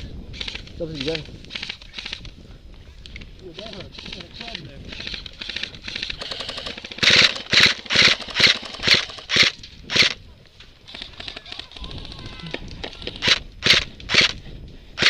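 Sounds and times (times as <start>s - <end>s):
faint rapid fire: 3.6s - 10.2s
airsoft gun firing full auto: 5.0s - 10.2s, 13.1s - 14.4s.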